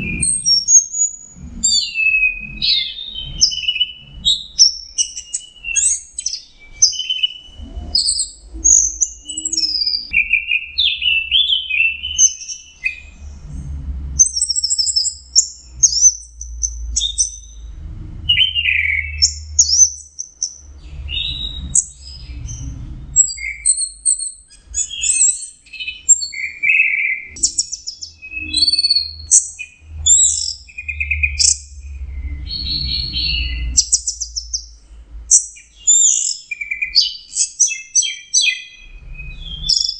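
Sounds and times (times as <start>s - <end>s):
low rumble: 0.0s - 1.8s, 12.9s - 24.0s, 28.5s - 35.3s.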